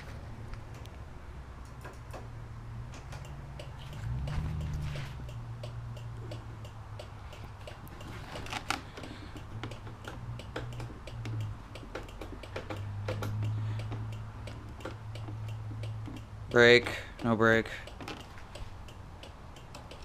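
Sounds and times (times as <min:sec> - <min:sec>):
rapid light ticking: 0:02.9 - 0:20.0.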